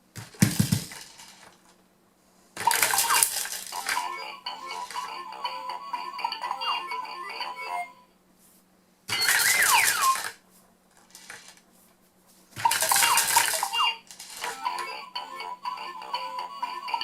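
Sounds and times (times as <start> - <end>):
toy playing a tune: 2.7 - 8.1, 9.1 - 10.4, 12.7 - 17.0
toy hiss with falling whistle: 9.1 - 10.4.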